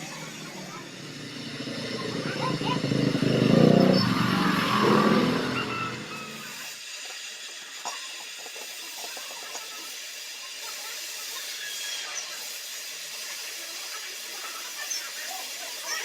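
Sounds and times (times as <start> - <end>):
welding arc crackling hiss: 6.1 - 16.0.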